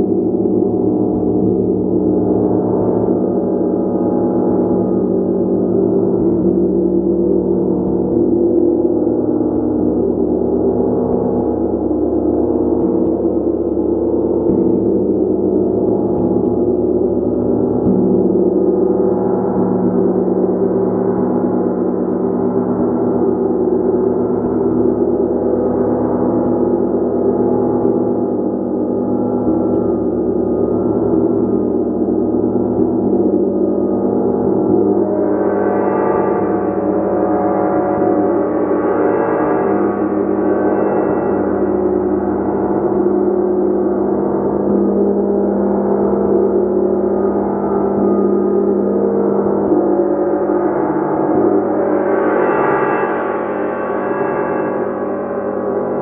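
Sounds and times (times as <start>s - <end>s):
gong playing: 23.9s - 46.2s, 47.0s - 56.0s.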